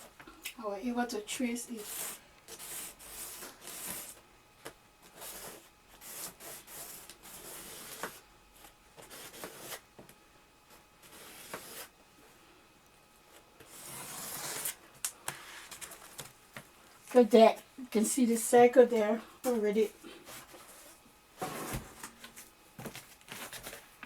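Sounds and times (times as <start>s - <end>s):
hand scraping wallpaper: 1.6s - 4.2s, 5.1s - 9.9s, 11.0s - 12.0s, 13.6s - 16.3s, 19.5s - 22.5s.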